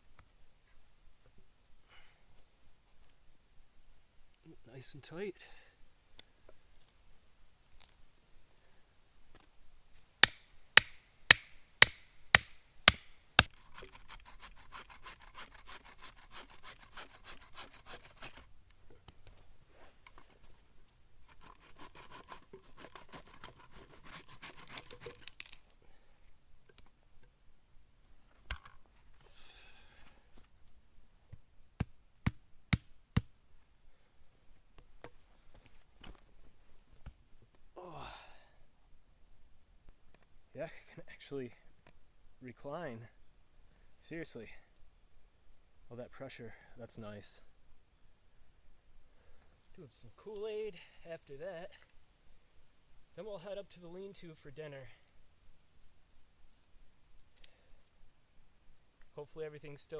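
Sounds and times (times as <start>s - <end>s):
knocks on wood: 10.2s - 13.5s
hand saw sawing through wood: 10.2s - 18.5s, 21.2s - 25.2s.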